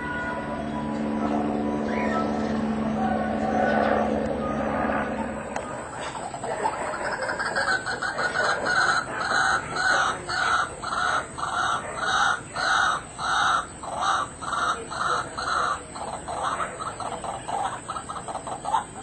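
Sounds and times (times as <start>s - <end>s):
waterhen calling: 6.0s - 19.0s.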